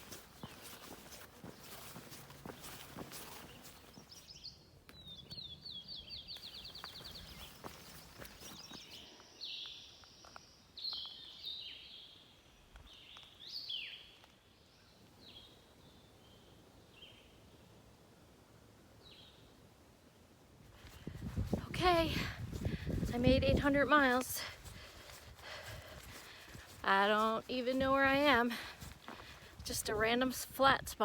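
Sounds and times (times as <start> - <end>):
faint footsteps: 0.0 - 4.4, 6.4 - 9.3, 20.7 - 30.6
songbird trill: 0.0 - 17.5.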